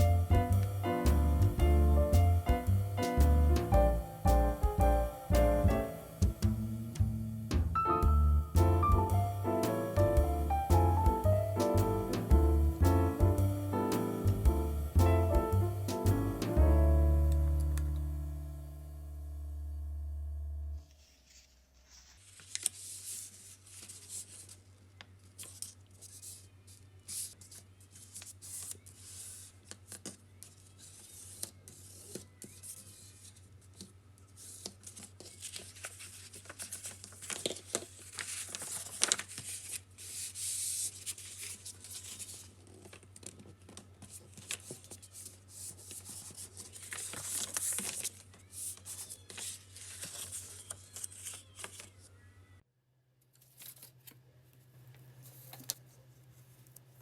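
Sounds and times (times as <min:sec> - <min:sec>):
steady low hum: 0:00.0 - 0:20.8.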